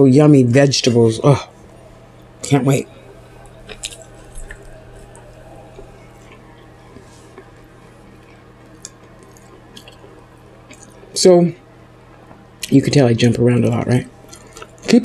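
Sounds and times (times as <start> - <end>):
low steady hum: 0.0 - 15.0
chewing and lip smacking: 1.6 - 11.2, 14.2 - 14.9.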